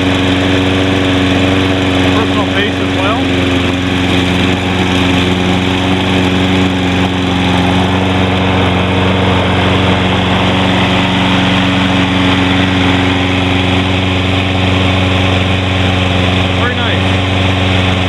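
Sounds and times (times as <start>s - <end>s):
lawn mower engine running: 0.0s - 18.0s.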